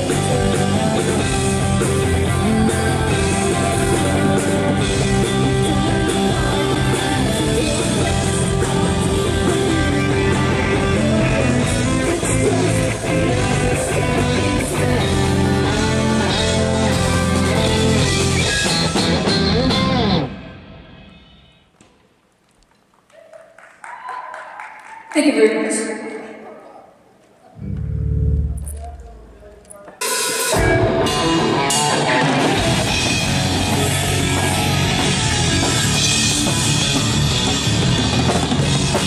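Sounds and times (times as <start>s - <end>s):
rock band playing loud: 0.0s - 21.1s, 29.9s - 39.0s.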